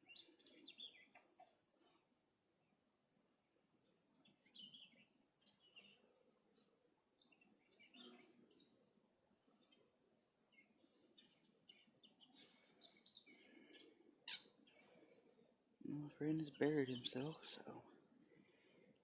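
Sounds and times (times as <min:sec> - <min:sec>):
bird chirps and calls: 0:00.0 - 0:01.7, 0:10.6 - 0:15.1, 0:15.9 - 0:17.8.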